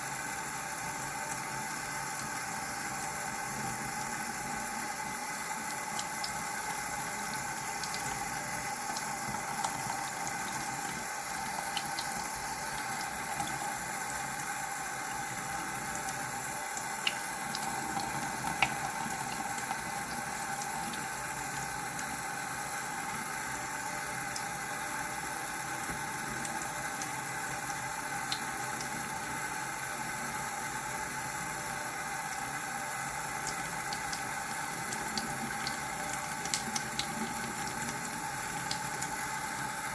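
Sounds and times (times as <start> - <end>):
water running from a tap: 0.0 - 39.9.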